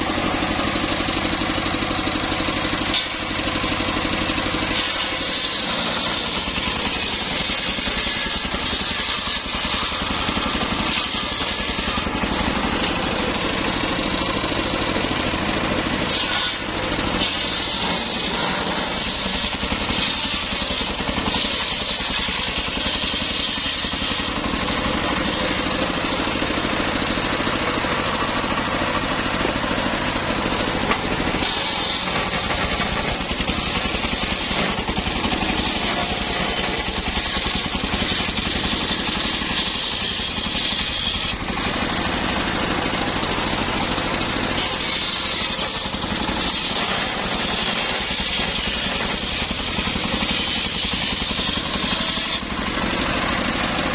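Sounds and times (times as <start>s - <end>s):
sawmill saw running: 0.0s - 53.9s.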